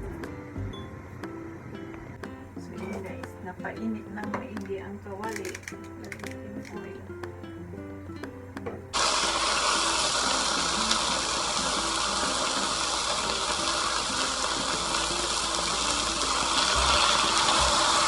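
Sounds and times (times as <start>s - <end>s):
food frying in hot oil: 9.0s - 18.0s.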